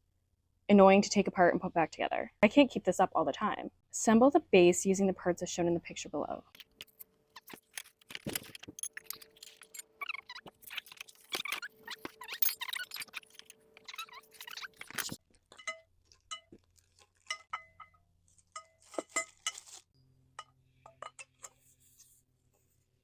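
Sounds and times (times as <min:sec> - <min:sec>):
metal frame parts clinking: 0:06.5 - 0:16.6.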